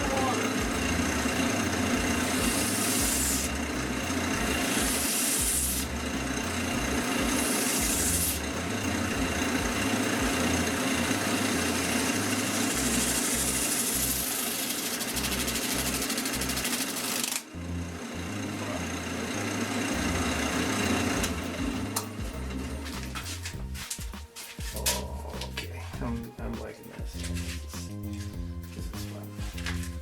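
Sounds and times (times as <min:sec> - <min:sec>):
wood lathe motor running: 0:00.0 - 0:24.8.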